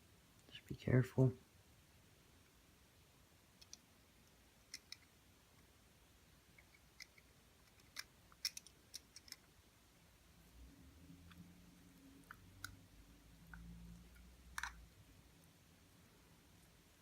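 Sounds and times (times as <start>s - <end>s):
small clicks of watch parts: 4.7s - 5.1s, 6.6s - 9.5s.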